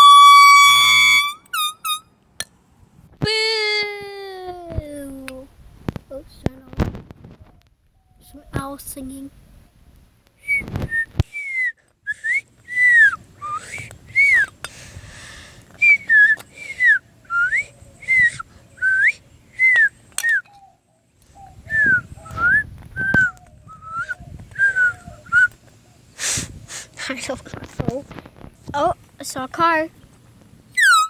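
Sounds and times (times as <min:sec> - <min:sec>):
person whistling quick notes: 0:00.0 - 0:02.0, 0:10.4 - 0:14.5.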